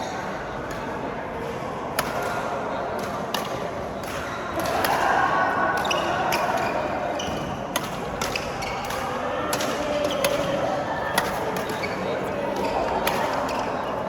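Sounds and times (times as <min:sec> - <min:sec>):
voices murmuring in hall: 0:00.0 - 0:14.0
racket hitting shuttlecock: 0:05.8 - 0:12.0
shoes squeaking on court: 0:11.6 - 0:13.9.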